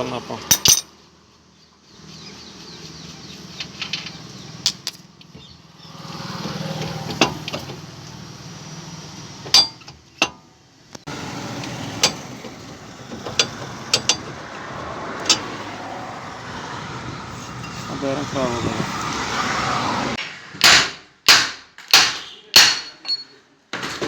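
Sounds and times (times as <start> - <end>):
wheel bearing hum: 0.4 - 21.1.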